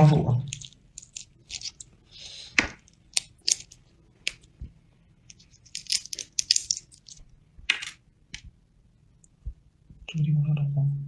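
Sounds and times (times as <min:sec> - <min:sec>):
crayfish shell crackling: 0:00.4 - 0:04.6, 0:05.3 - 0:08.4.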